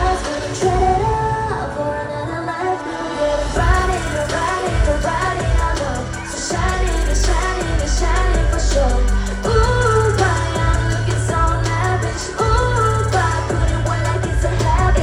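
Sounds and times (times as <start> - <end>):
girl group singing: 0.0 - 15.0
heavy bass beat: 3.6 - 15.0.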